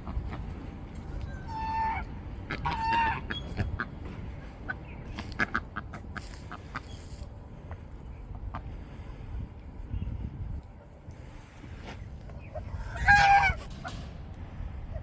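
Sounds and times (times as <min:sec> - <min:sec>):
honk-like closed-mouth calls: 0:01.4 - 0:03.9.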